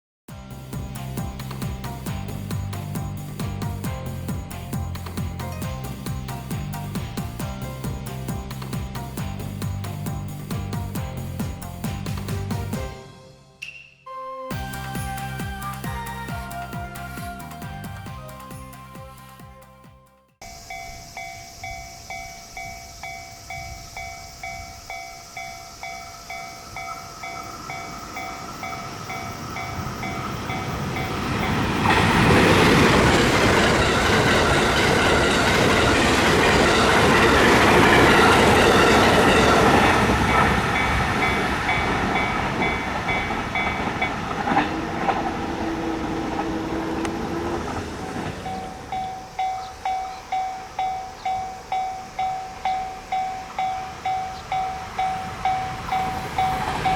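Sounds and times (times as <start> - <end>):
train passing over rails: 0.3 - 13.4, 14.5 - 19.6, 20.4 - 56.9
wheels clacking on rail joints: 20.4 - 56.9
electronic warning bell dinging: 48.4 - 56.9.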